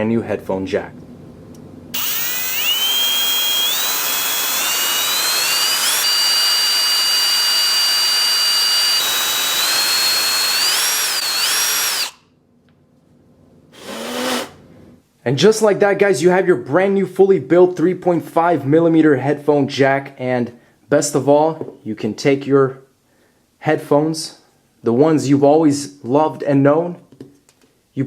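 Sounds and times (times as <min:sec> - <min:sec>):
electric drill whining: 0:02.0 - 0:12.2, 0:13.8 - 0:14.6.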